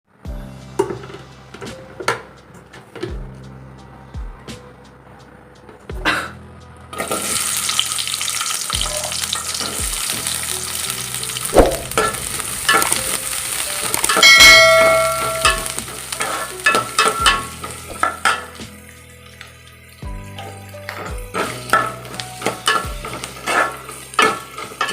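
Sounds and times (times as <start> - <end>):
food sizzling in hot oil: 7.0 - 24.9
metal spatula scraping a pan: 11.4 - 18.6, 20.4 - 24.9
metal utensil clanging: 11.4 - 18.6, 20.4 - 24.9.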